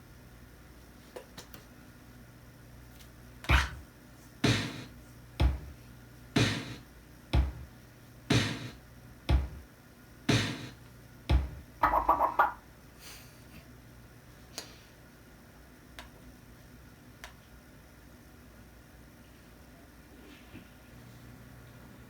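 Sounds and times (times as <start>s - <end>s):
kick drum hits: 3.5s - 3.8s, 4.4s - 4.8s, 5.4s - 5.8s, 6.4s - 7.7s, 8.3s - 9.7s, 10.3s - 11.7s
snare drum hits: 3.5s - 3.8s, 4.4s - 5.6s, 6.4s - 6.8s, 8.3s - 9.6s, 10.3s - 11.6s.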